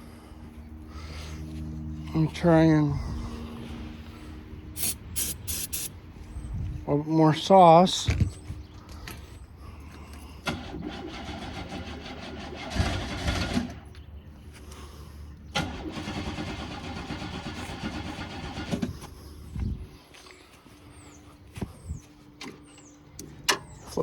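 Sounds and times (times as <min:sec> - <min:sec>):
car engine cranking: 0:10.4 - 0:13.8, 0:15.5 - 0:19.0.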